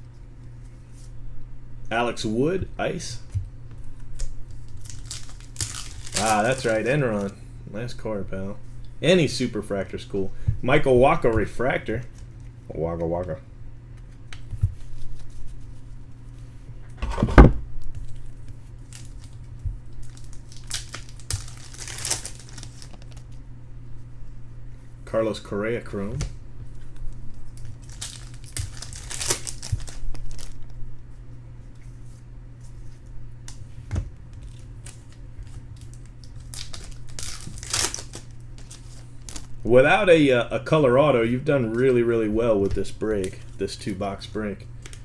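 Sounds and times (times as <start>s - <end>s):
low steady hum: 0.0s - 45.0s
foil wrapper crinkling and tearing: 4.2s - 7.4s, 18.0s - 23.4s, 27.3s - 30.7s, 34.4s - 39.6s.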